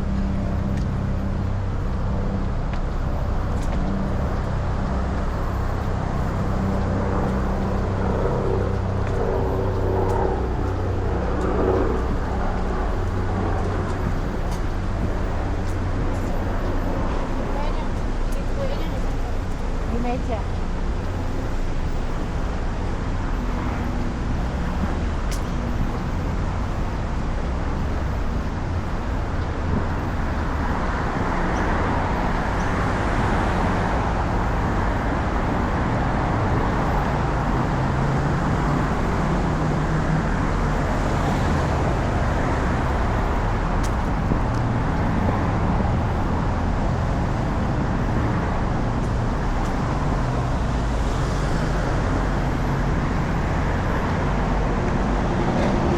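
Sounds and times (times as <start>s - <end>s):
road traffic passing: 0.0s - 55.9s.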